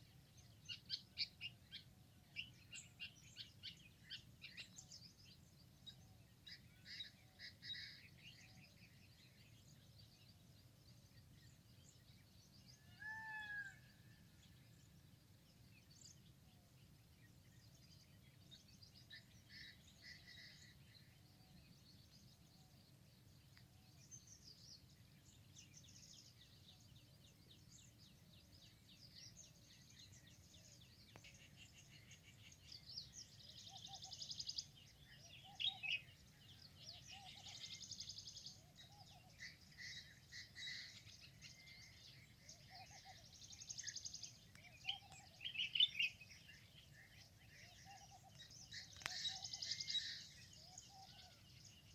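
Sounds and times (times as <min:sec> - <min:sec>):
birds chirping: 0:23.9 - 0:51.9.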